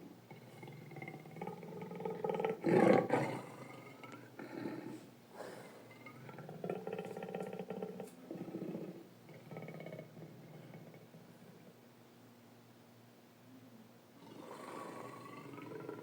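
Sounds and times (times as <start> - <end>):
big cat rasping growl: 0.0 - 5.0, 14.2 - 16.0
big cat roar: 14.2 - 16.0.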